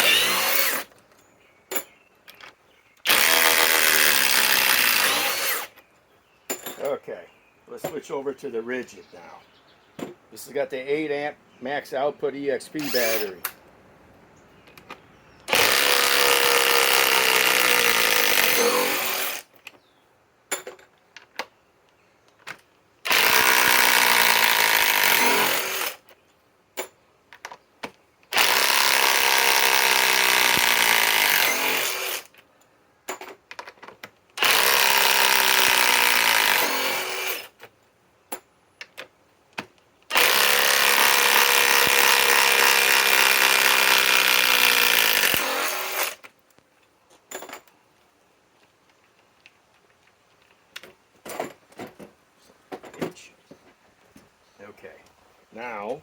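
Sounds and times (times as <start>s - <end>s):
impact wrench running: 0.0s - 0.9s, 3.1s - 5.7s, 12.8s - 13.3s, 15.5s - 19.4s, 23.1s - 26.0s, 28.3s - 32.2s, 34.4s - 37.5s, 40.1s - 46.2s
small clicks and knocks: 0.9s - 3.1s, 14.6s - 15.1s, 20.5s - 22.8s, 26.1s - 28.3s, 32.3s - 34.4s, 37.6s - 40.1s, 48.5s - 54.3s.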